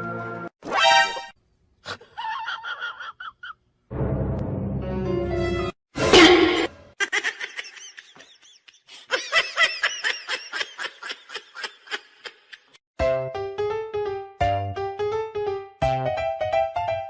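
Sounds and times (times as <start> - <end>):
person laughing: 1.8 - 3.6, 7.0 - 12.8.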